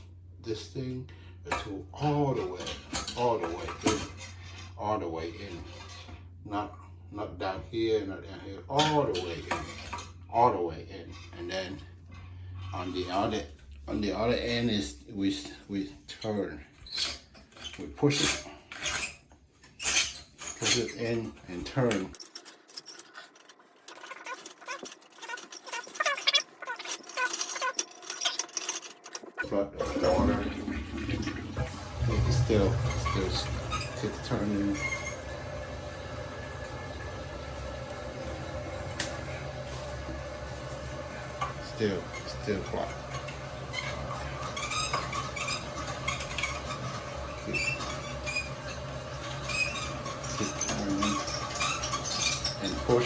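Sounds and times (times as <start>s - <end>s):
short squeaks: 16.8s - 21.6s, 23.0s - 30.4s, 32.0s - 35.7s, 41.2s - 53.0s
auger cable clicking and rattling: 20.4s - 53.0s.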